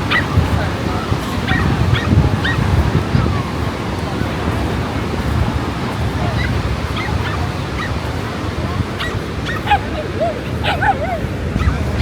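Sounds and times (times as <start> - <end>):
surf rushing: 0.0 - 12.0
dog yipping: 0.1 - 0.4, 1.4 - 3.5, 6.2 - 12.0.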